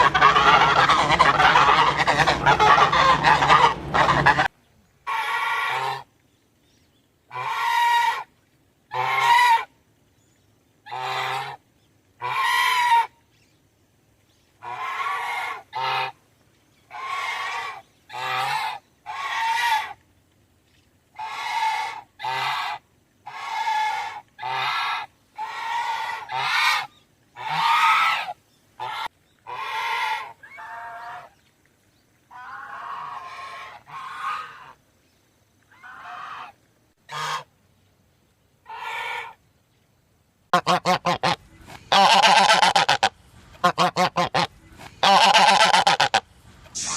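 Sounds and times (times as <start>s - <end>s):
goose honking: 0.0s - 4.5s, 7.3s - 8.3s, 8.9s - 9.7s, 12.2s - 13.1s, 21.2s - 31.3s, 32.3s - 34.8s, 35.8s - 36.5s, 37.1s - 37.5s, 40.5s - 46.2s.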